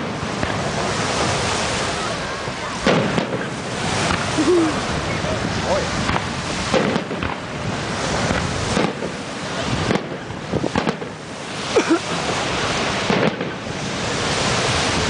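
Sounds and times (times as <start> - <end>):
fireworks crackle and rumble: 0.0 - 15.0
firework shells bursting: 2.8 - 5.2, 5.9 - 15.0.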